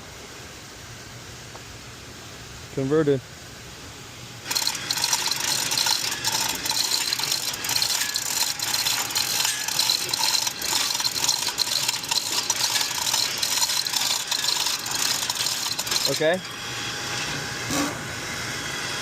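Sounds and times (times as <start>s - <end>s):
rapid mechanical clicking and rattling: 4.4s - 17.4s.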